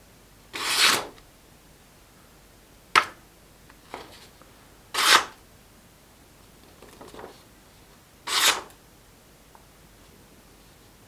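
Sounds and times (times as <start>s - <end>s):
knife slicing paper: 0.6s - 1.2s, 5.0s - 5.4s, 8.3s - 8.7s.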